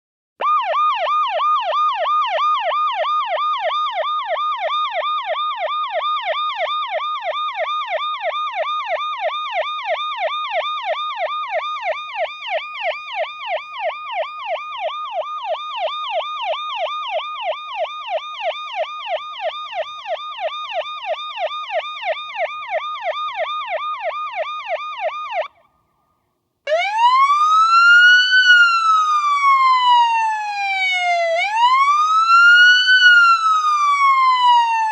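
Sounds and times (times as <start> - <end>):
electronic police siren: 0.4 - 25.6, 26.7 - 34.9.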